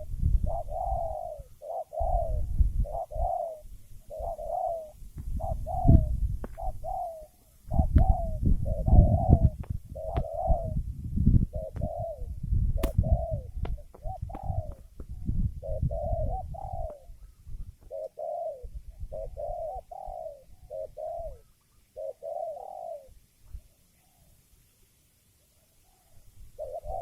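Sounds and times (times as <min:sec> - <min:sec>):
dove cooing: 0:00.0 - 0:24.4, 0:25.5 - 0:27.0
sharp click: 0:12.8 - 0:13.0.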